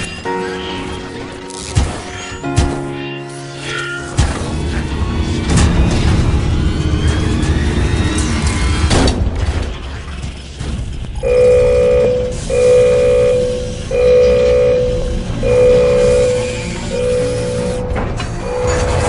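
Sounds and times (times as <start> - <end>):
deep rumbling music bed: 2.5 - 19.0
repeating synth note: 11.2 - 19.0.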